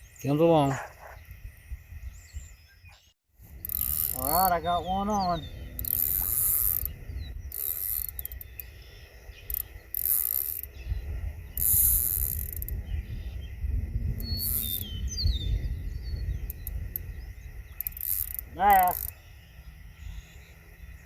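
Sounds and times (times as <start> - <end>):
fishing reel ratcheting: 3.5 - 8.8, 9.4 - 10.8, 11.5 - 12.8, 14.2 - 14.9, 16.3 - 19.2.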